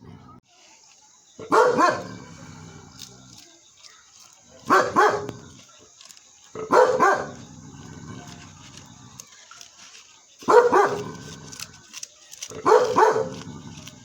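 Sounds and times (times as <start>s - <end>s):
dog barking: 1.4s - 2.5s, 4.6s - 5.6s, 6.6s - 7.5s, 10.4s - 11.6s, 12.6s - 13.9s.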